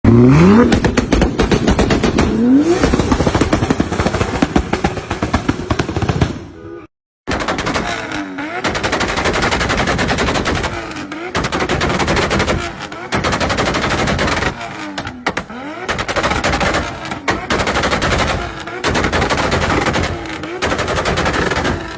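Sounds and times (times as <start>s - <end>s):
car engine revving: 0.0s - 5.6s, 7.9s - 8.9s, 10.4s - 19.0s
exhaust pops and bangs: 0.4s - 6.5s, 7.3s - 21.9s.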